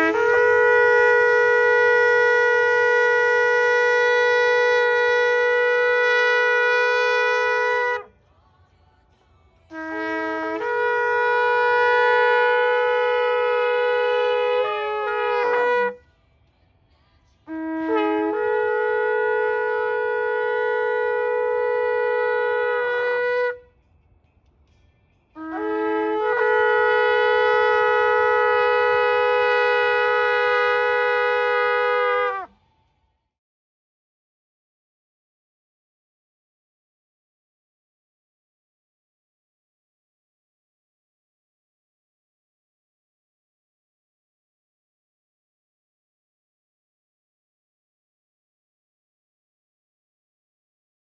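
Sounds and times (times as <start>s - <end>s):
shofar blasts: 0.0s - 8.1s, 9.7s - 16.0s, 17.5s - 23.7s, 25.4s - 32.6s.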